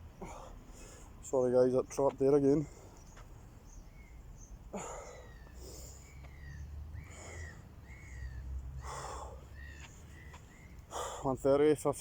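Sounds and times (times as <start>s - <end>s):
small bird chirping: 2.9s - 8.8s, 9.5s - 10.9s
person breathing heavily: 4.7s - 6.2s, 7.0s - 7.7s, 8.8s - 9.6s, 10.8s - 11.4s.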